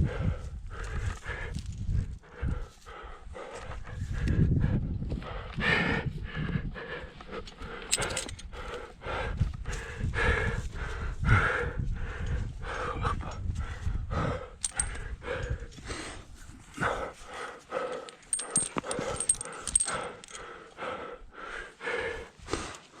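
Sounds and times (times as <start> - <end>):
person panting hard: 0.0 - 23.0
gear clicking and scraping rock: 7.8 - 8.5, 17.9 - 20.4.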